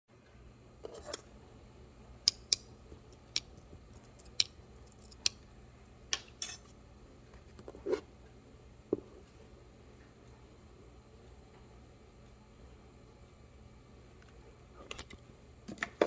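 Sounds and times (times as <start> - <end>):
small utensils clicking: 0.9 - 1.2, 2.3 - 5.4, 6.1 - 6.7.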